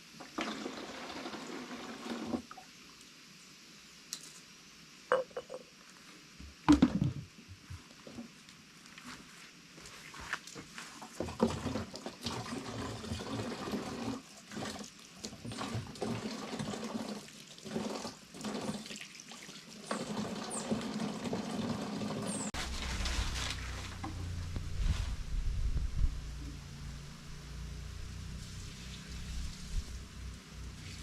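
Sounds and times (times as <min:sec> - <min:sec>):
water pouring and splashing: 0:00.2 - 0:02.7, 0:10.2 - 0:25.2, 0:28.2 - 0:31.0
low rumble: 0:22.6 - 0:30.7.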